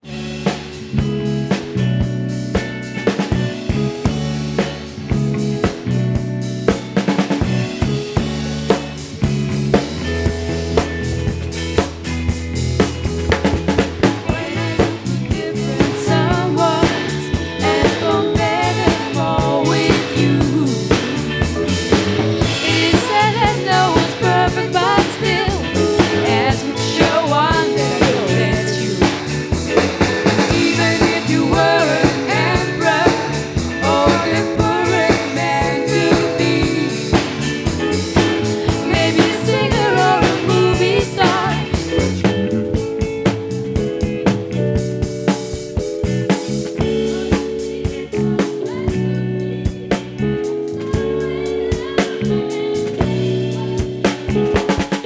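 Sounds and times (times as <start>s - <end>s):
rock band playing: 0.0s - 55.0s
person singing: 14.1s - 37.6s, 38.2s - 42.2s, 47.0s - 49.3s, 50.8s - 55.0s.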